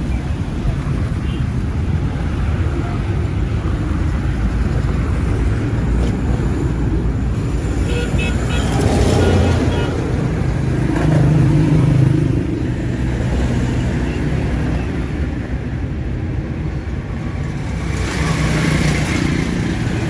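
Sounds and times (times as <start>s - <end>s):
vehicle engine humming: 0.0s - 15.6s.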